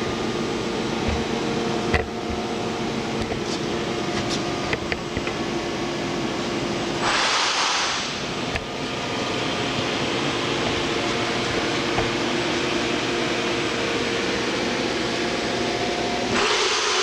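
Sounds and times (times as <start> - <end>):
machine hum: 0.0 - 17.0
loud hiss: 7.0 - 8.5, 16.3 - 17.0.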